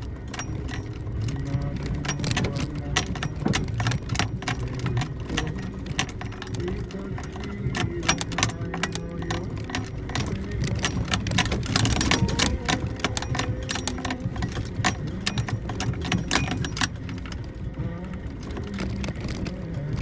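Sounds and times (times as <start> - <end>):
cabin items clattering and rattling: 0.0 - 20.0
car engine droning: 0.0 - 20.0.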